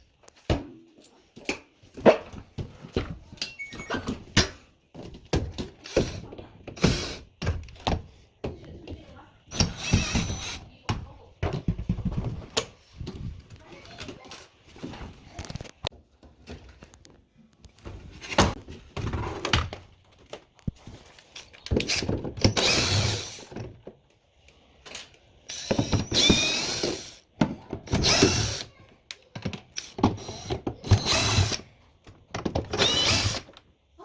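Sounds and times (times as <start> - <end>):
electric drill-driver running: 9.5 - 10.6, 22.5 - 23.4, 25.5 - 27.2, 28.0 - 28.7, 29.8 - 31.6, 32.8 - 33.5.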